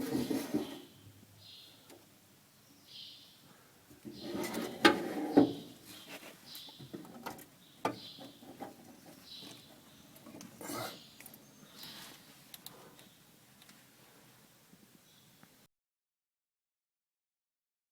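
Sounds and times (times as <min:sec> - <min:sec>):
bird chirping: 0:00.0 - 0:02.0, 0:02.6 - 0:13.3, 0:15.0 - 0:15.5.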